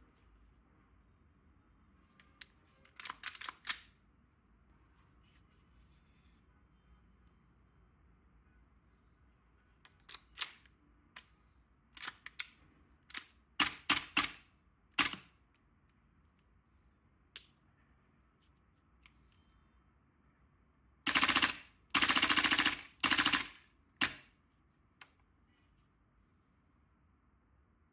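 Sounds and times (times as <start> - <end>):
automatic firing bursts: 21.1 - 24.2.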